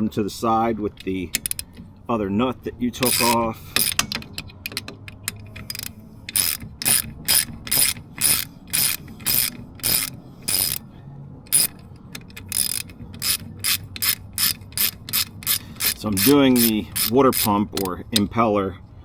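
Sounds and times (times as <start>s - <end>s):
socket ratchet clicking: 0.9s - 1.8s, 3.0s - 10.8s, 11.5s - 18.4s.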